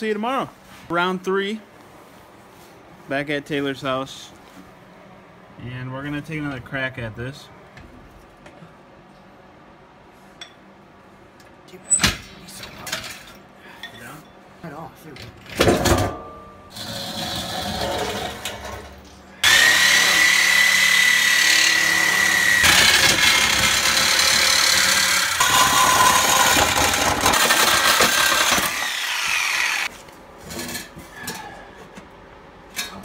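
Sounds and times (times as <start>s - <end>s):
power tool whining: 19.4s - 29.9s.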